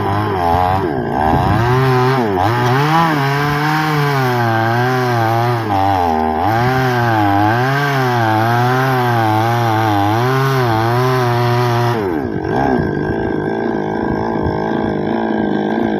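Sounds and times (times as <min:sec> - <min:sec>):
chainsaw cutting wood: 0:00.0 - 0:15.9
steady engine-like drone: 0:11.8 - 0:15.9.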